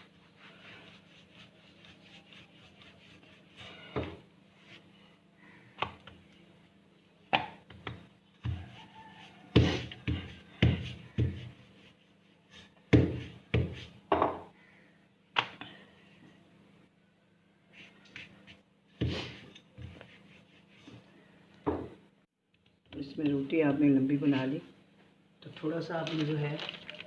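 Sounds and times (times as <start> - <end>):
rolling pin knocking on dough: 9.5 - 11.6, 12.9 - 14.4.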